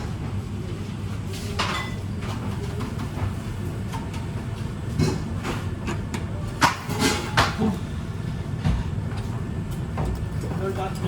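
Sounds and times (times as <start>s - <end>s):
low rumble of machinery: 0.0s - 11.0s.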